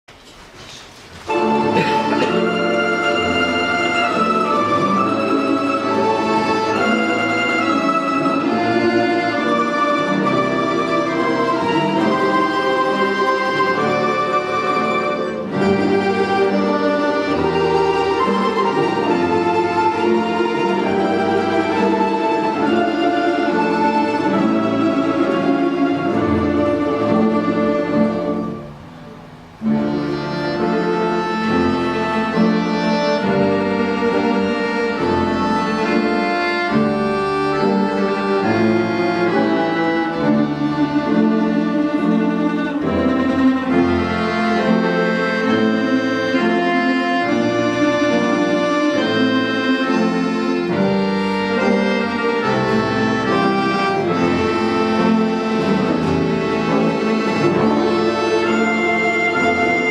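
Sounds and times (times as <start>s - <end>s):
folk instrument ensemble playing: 0.2s - 59.9s
reedy accordion: 1.3s - 59.9s.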